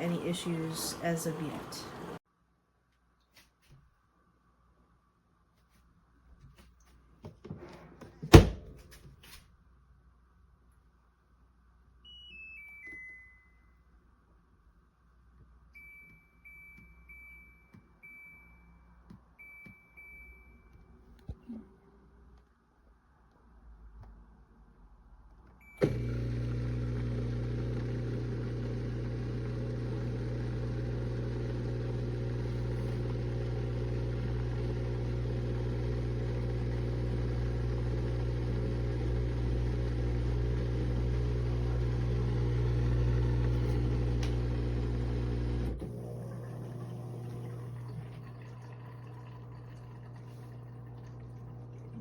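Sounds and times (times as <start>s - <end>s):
dishwasher pump motor humming: 0.0s - 2.2s, 25.8s - 52.0s.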